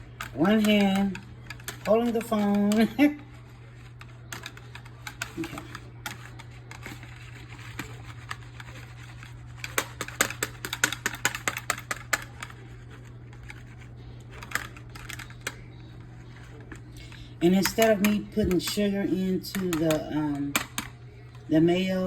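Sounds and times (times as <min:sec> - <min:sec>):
whisk clicking against bowl: 0:00.0 - 0:12.7, 0:17.4 - 0:21.0
steady low hum: 0:00.0 - 0:22.0.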